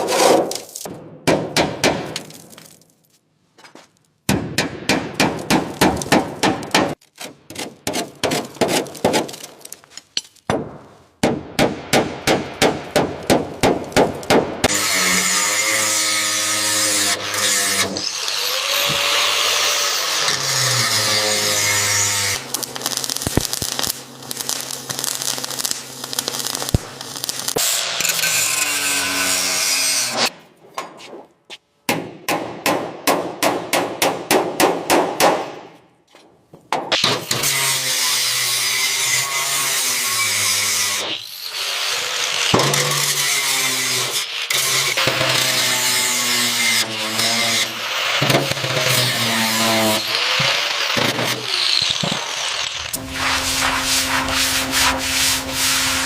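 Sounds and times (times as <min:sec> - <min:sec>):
power tool running: 0:47.5 - 0:56.0.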